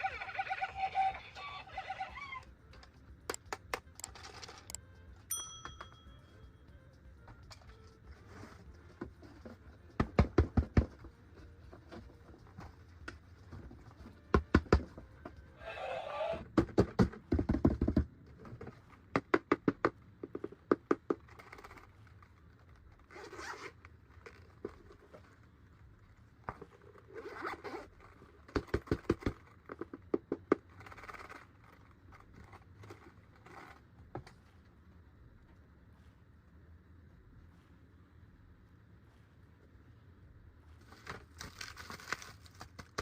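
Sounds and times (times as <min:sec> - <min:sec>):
packaging rustling: 0:40.8 - 0:43.0.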